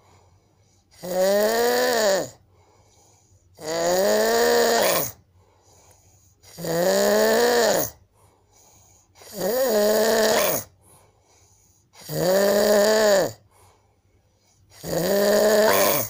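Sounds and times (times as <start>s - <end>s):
man snoring: 1.0s - 2.4s, 3.6s - 5.2s, 6.4s - 8.0s, 9.2s - 10.8s, 12.0s - 13.4s, 14.7s - 16.0s.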